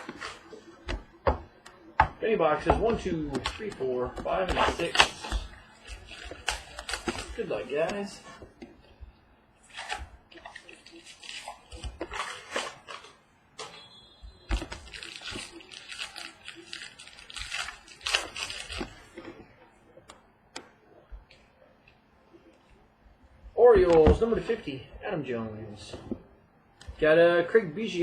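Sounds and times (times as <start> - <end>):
packaging rustling: 9.7 - 13.7, 14.5 - 19.3.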